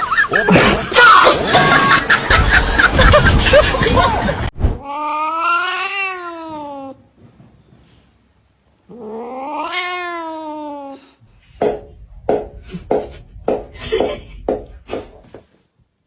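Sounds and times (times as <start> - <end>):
cat yowling: 4.8 - 7.0, 8.9 - 11.2
dense jumble of noise: 11.2 - 15.3.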